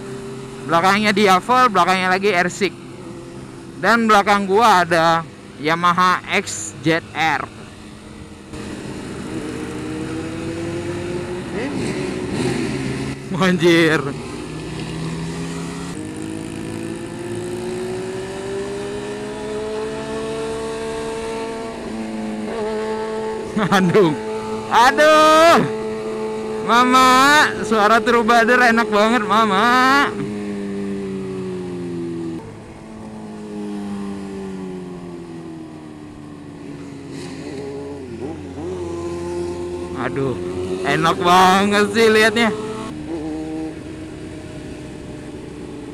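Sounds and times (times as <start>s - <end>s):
motorcycle engine accelerating: 0.0s - 45.9s.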